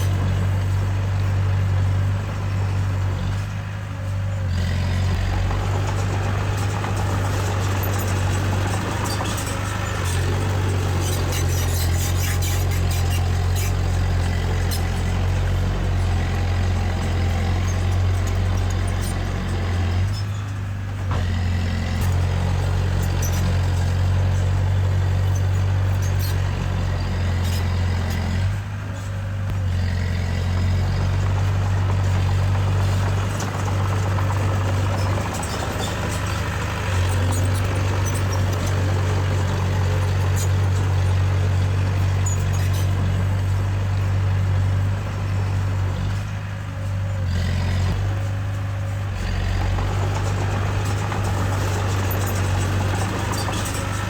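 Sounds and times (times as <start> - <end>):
diesel engine humming: 0.0 - 54.0.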